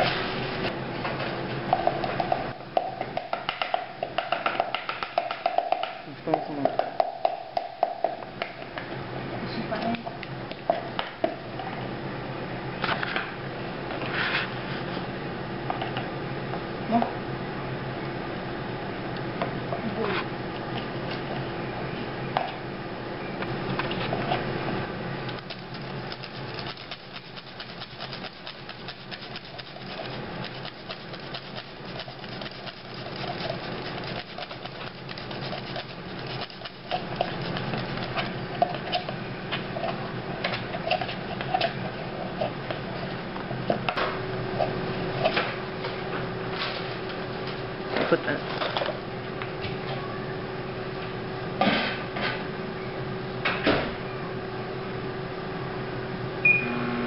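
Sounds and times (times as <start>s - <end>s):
food preparation rustling and scraping: 0.0s - 1.5s, 13.9s - 15.1s, 23.7s - 24.6s, 25.3s - 43.2s
steady hum: 0.0s - 57.0s.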